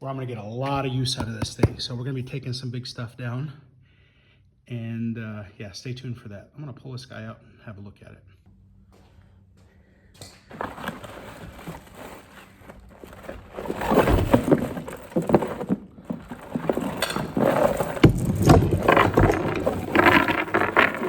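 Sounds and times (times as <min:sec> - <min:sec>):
cardboard and wrapping rustling: 0:10.4 - 0:21.0
metal knocks and clanks: 0:14.2 - 0:21.0.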